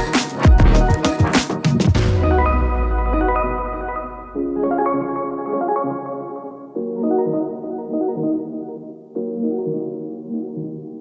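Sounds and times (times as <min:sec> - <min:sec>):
drum-driven electronic music: 0:00.0 - 0:04.6
organ-like keyboard chords: 0:00.0 - 0:11.0
deep low note: 0:02.0 - 0:04.6.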